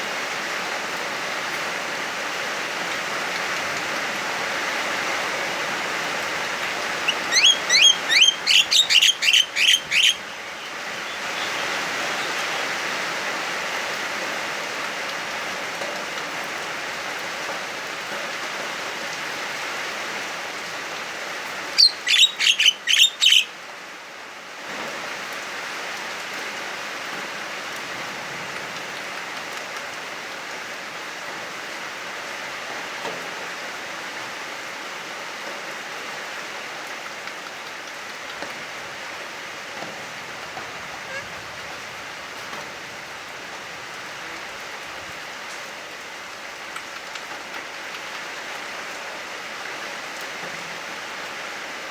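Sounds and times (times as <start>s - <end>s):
heavy rain hiss: 0.0s - 51.9s
myna whistled calls: 6.8s - 12.8s, 21.8s - 23.6s.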